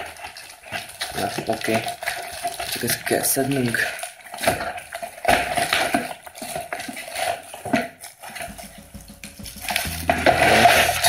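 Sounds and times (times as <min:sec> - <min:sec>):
packaging rustling and crinkling: 0:00.0 - 0:08.3.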